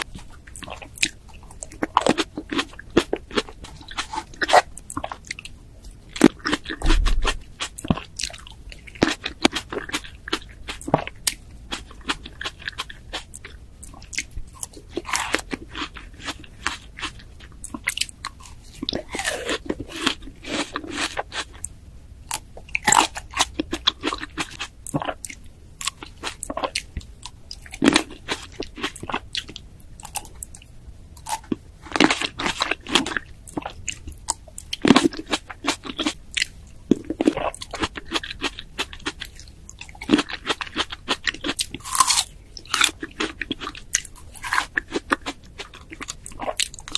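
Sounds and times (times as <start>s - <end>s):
wet chewing: 0.0s - 21.7s, 22.3s - 46.9s.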